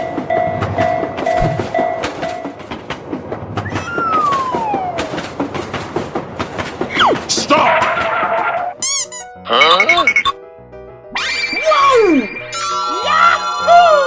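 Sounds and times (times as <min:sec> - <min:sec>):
train wheels clickety-clack: 0:00.0 - 0:08.8
whistle-like falling tone: 0:03.7 - 0:05.1.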